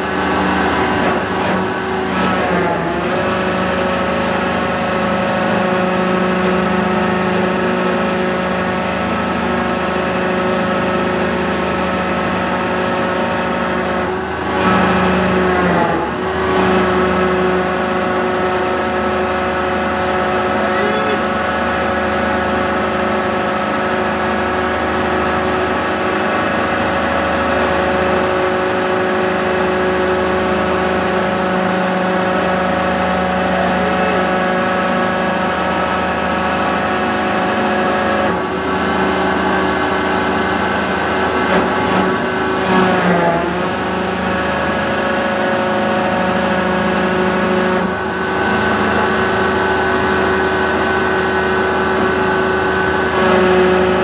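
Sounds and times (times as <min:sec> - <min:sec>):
construction machinery engine drone: 0:00.0 - 0:54.0.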